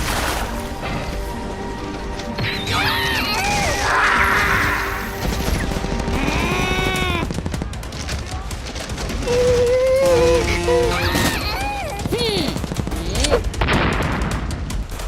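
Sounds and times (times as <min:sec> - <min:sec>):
rapid gunfire-like pops: 0:05.3 - 0:09.7, 0:11.2 - 0:15.0
cartoon music: 0:09.7 - 0:12.4.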